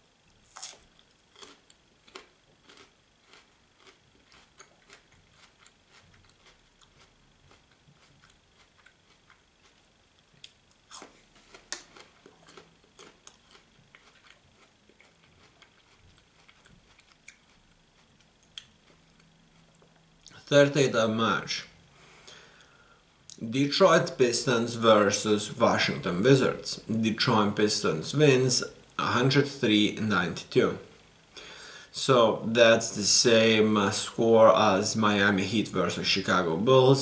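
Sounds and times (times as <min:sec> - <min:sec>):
chewing and eating sounds: 0:00.5 - 0:20.4.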